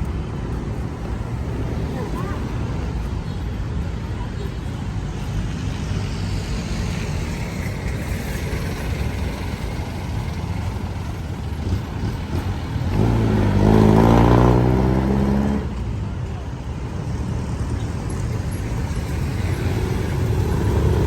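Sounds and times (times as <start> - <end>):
street traffic rumble: 0.0 - 21.0
vehicle engine passing close: 11.5 - 15.9, 18.8 - 21.0.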